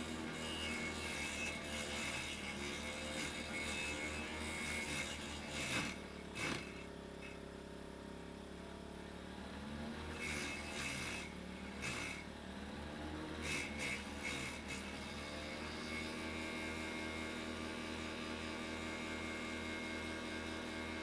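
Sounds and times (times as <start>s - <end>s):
motor humming: 0.0s - 7.5s, 10.1s - 12.3s.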